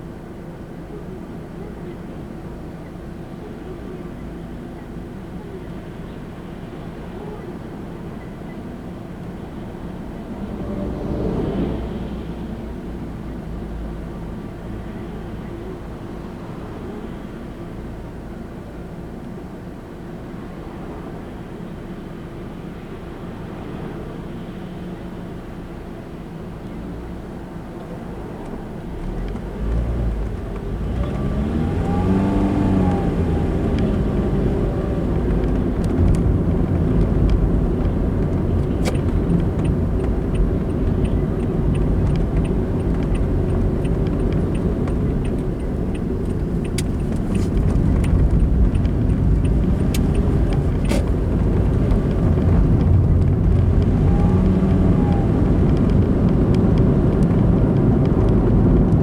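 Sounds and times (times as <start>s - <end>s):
car engine and tyre noise: 0.0s - 59.0s
faint ticking: 32.8s - 53.8s.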